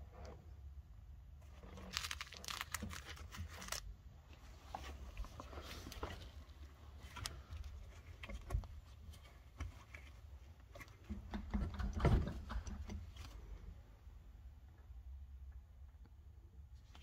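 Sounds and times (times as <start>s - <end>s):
clicks taps and knocks: 10.8s - 13.3s.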